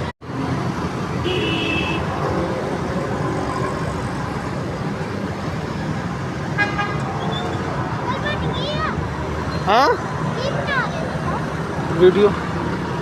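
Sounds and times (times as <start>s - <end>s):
road traffic: 0.0s - 13.0s
car horn toot: 1.2s - 2.1s.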